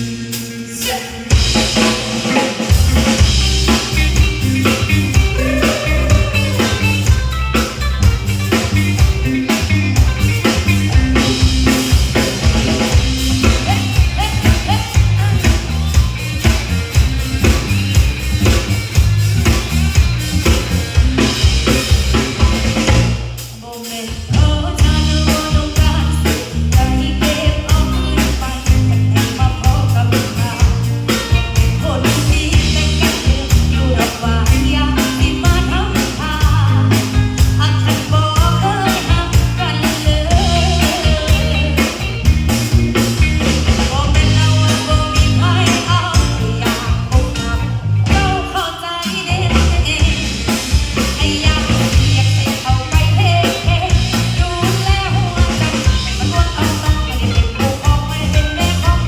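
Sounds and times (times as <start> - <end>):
live band playing: 0.0 - 59.0.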